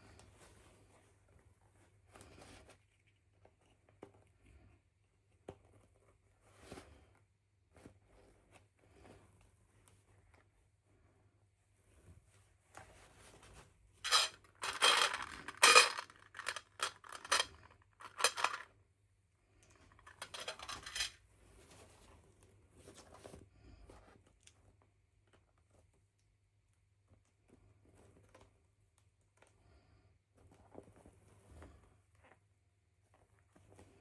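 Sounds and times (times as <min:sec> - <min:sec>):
plastic toy pieces clattering: 0:14.0 - 0:18.7, 0:20.0 - 0:21.2.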